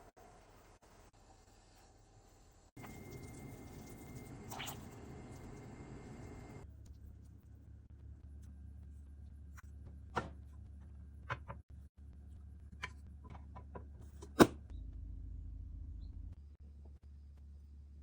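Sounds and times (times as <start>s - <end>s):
low steady hum: 2.8s - 9.6s.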